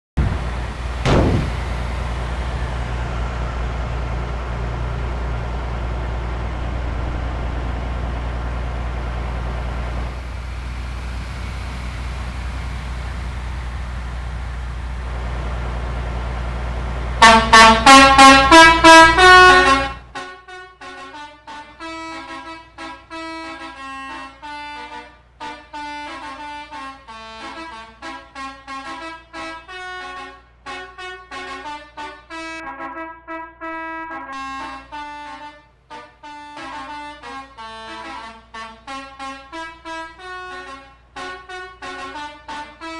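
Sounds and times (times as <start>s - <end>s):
bus engine and road noise: 0.2s - 42.9s
brief thump: 1.0s - 1.8s.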